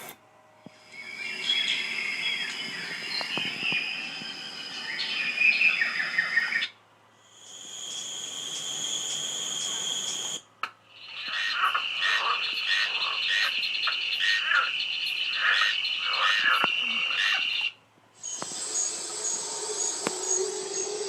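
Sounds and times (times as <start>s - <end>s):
pulsing insect trill: 0.8s - 6.6s, 7.2s - 10.4s, 18.2s - 21.0s
chirping animal calls: 7.5s - 21.0s.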